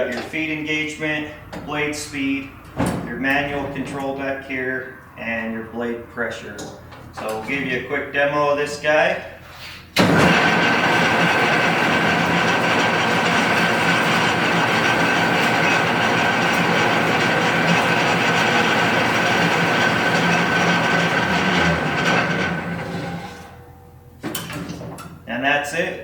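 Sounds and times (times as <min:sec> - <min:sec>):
band saw whining: 0:10.0 - 0:24.2.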